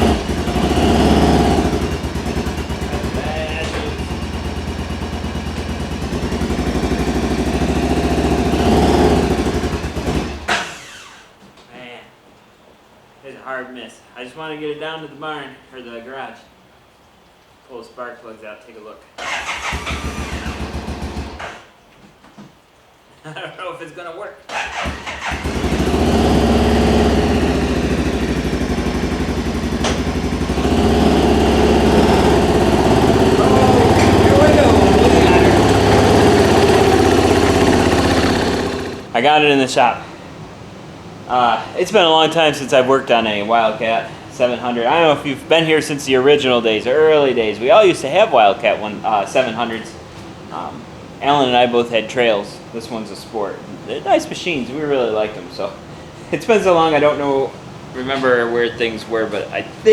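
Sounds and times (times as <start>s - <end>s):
engine misfiring: 0.0s - 11.3s, 19.2s - 21.7s, 24.5s - 39.2s.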